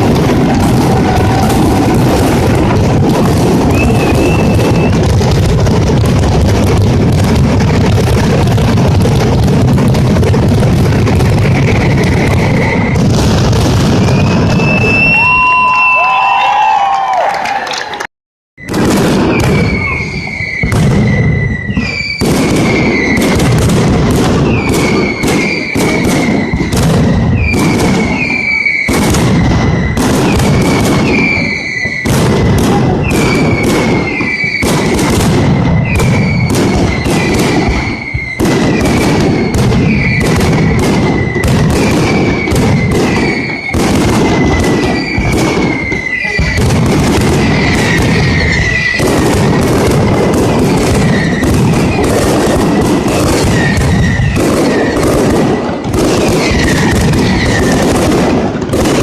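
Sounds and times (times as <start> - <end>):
firecracker blasts: 0.0 - 59.0
high whistling tone: 3.7 - 5.0, 14.2 - 16.7, 19.6 - 23.2, 44.4 - 46.6.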